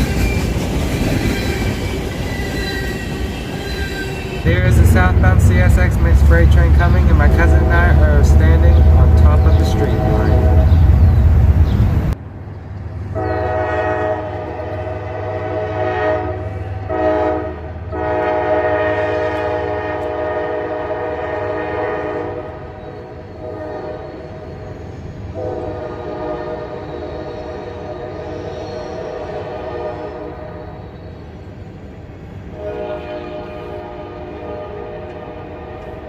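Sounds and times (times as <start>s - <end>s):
train rumble: 0.0s - 36.0s
locomotive air horn chord: 4.4s - 11.2s, 13.2s - 22.7s, 23.4s - 24.2s, 25.4s - 28.2s, 29.1s - 30.7s, 32.5s - 36.0s.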